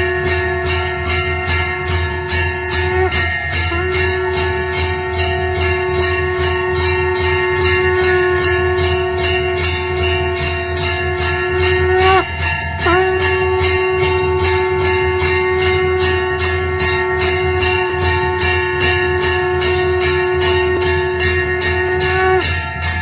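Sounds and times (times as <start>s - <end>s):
hand bell rung rapidly: 0.0s - 23.0s
low hum: 0.0s - 23.0s.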